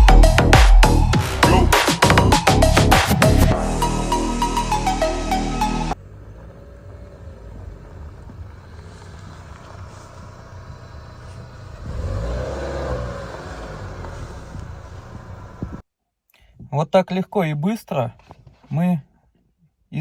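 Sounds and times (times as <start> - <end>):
car driving: 3.2 - 15.8.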